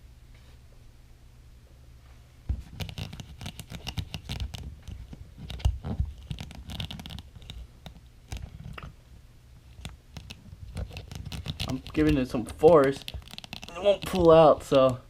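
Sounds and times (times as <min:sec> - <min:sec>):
hard plastic scratching and clicking: 0:02.5 - 0:08.9, 0:09.6 - 0:15.0.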